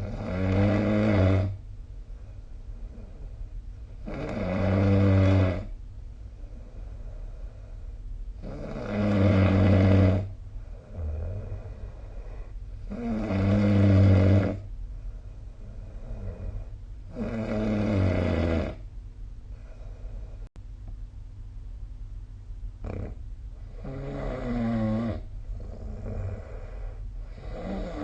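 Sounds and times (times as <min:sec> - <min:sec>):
person snoring: 0:00.0 - 0:01.6, 0:04.0 - 0:05.8, 0:06.6 - 0:14.7, 0:15.6 - 0:18.8, 0:22.8 - 0:28.0
quiet breaths: 0:00.0 - 0:20.6, 0:23.5 - 0:28.0.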